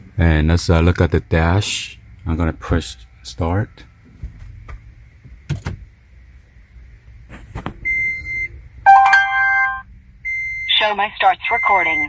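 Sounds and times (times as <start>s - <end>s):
multi-tone electronic chime: 8.9s - 9.8s
push-start button click: 8.9s - 9.8s
steady electronic beep: 8.9s - 10.4s, 11.4s - 12.0s.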